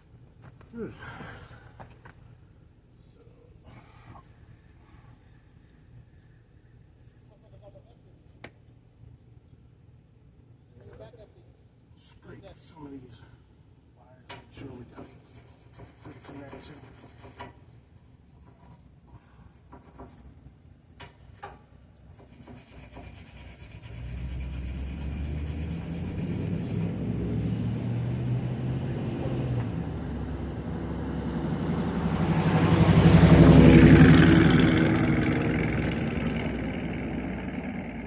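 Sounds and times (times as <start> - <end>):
heavy vehicle rumble: 23.8 - 38.0.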